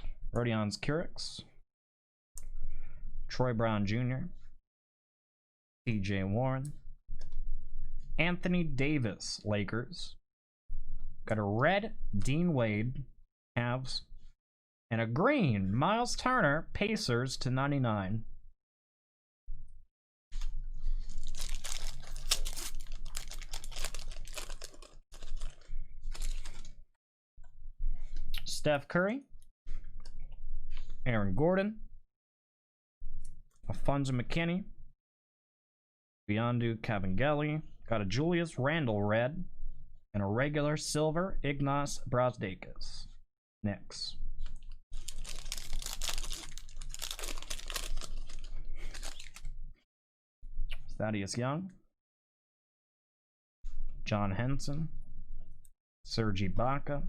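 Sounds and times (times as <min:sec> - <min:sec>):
foil wrapper crinkling and tearing: 0:20.9 - 0:26.8, 0:44.9 - 0:49.5.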